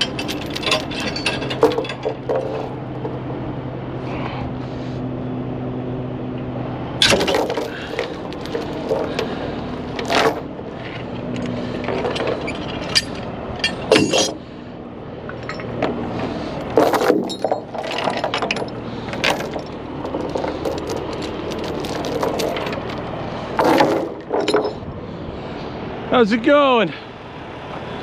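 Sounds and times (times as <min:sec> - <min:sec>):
metal chains clanking and rattling: 0:00.0 - 0:03.2, 0:07.0 - 0:14.4, 0:15.3 - 0:24.9.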